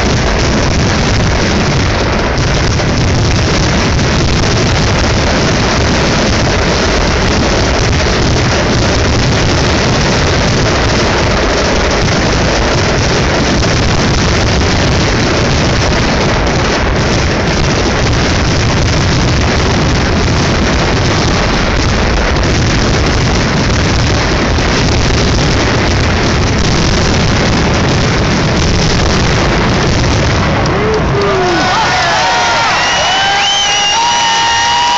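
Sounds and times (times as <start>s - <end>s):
fireworks continuous rumble: 0.0s - 34.9s.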